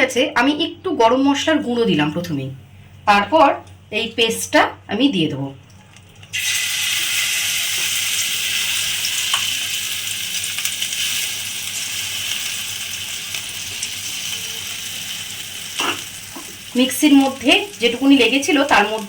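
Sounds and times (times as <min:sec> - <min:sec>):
paste sizzling in hot oil: 0:06.3 - 0:19.0.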